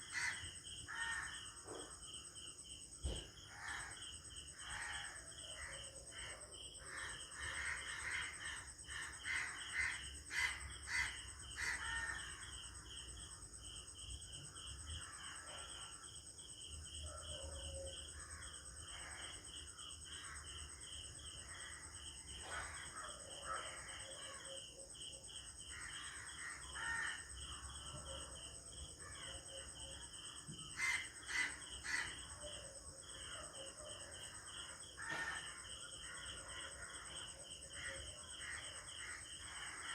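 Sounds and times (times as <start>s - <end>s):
crows cawing: 0.0s - 1.4s, 6.9s - 12.5s, 25.7s - 27.3s, 30.7s - 32.3s, 35.0s - 35.6s
pulsing insect chirp: 0.0s - 39.9s.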